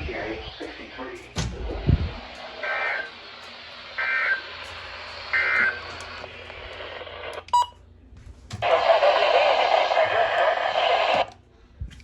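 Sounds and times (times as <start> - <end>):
brief beep: 7.5 - 7.8.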